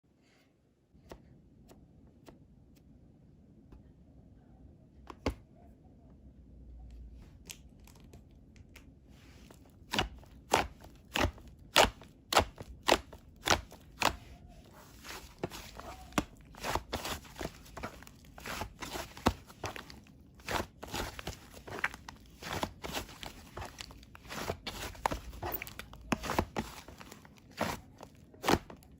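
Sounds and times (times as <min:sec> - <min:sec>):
slime squishing by hand: 0:07.2 - 0:28.9.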